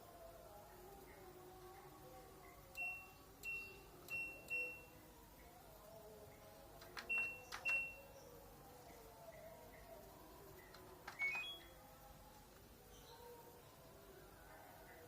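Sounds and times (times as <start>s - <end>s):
short electronic beeps: 11.2s - 11.6s.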